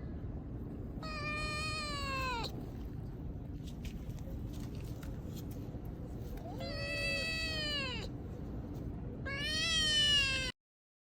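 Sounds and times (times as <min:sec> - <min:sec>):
cat meowing: 0:01.0 - 0:02.6, 0:06.4 - 0:08.1, 0:09.2 - 0:10.6.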